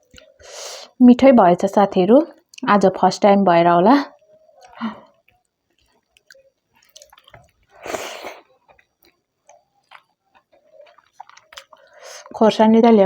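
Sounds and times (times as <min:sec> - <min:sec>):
person chewing: 0:04.5 - 0:12.3
wet mouth clicks and smacks: 0:04.6 - 0:07.8, 0:08.7 - 0:11.9.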